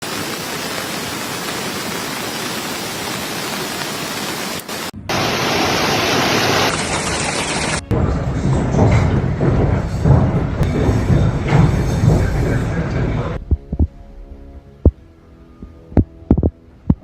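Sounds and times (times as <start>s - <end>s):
rainstorm hiss: 0.0s - 7.8s
deep rumbling: 7.8s - 17.0s.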